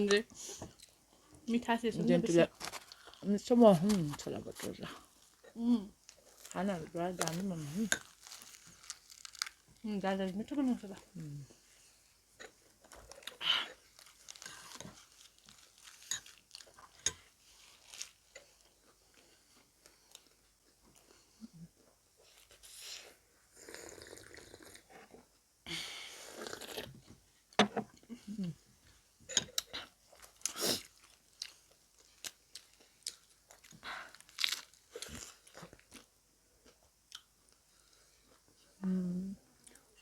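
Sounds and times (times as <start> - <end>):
crunchy bites of fried bread: 8.0 - 9.7, 30.2 - 36.1.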